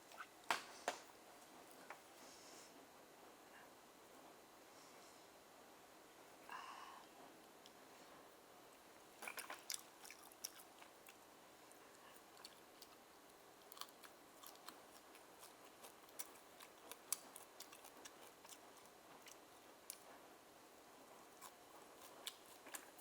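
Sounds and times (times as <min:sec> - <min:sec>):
wet chewing mouth clicks: 0:09.2 - 0:11.2, 0:12.3 - 0:13.0, 0:13.6 - 0:20.1, 0:21.4 - 0:23.0.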